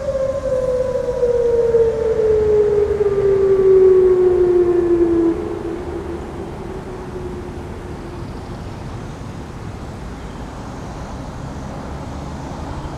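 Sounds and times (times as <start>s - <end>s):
warning siren wail falling: 0.0s - 9.5s
low traffic rumble: 0.0s - 12.9s.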